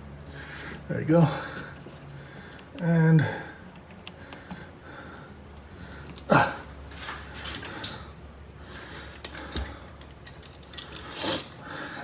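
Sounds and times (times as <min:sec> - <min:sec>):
wiring clicks and rustles: 0:09.0 - 0:11.6.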